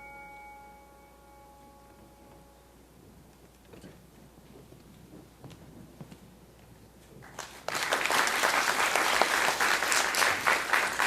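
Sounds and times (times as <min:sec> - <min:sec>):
audience applause: 0:07.2 - 0:11.0.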